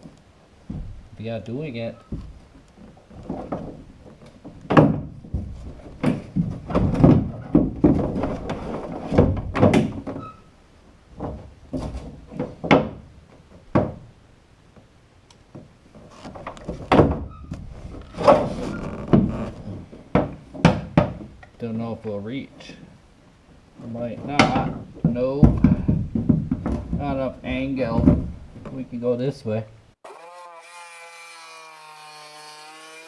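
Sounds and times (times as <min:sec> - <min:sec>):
wood and tools knocking: 0:00.6 - 0:01.2, 0:02.1 - 0:10.3, 0:11.2 - 0:14.1, 0:15.5 - 0:21.5, 0:24.3 - 0:27.2.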